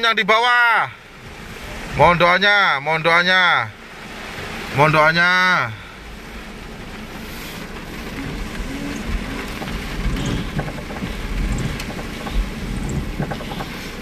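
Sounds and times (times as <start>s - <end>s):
rain hissing on a car: 0.0s - 14.0s
drops ticking on car body: 6.7s - 14.0s
low rumble: 7.8s - 14.0s.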